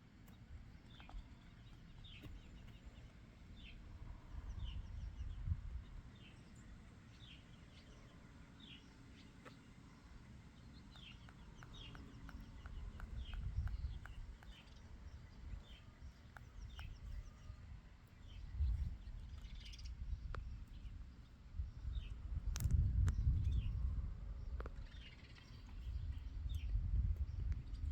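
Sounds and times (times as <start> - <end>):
birds chirping: 0.2 - 27.9.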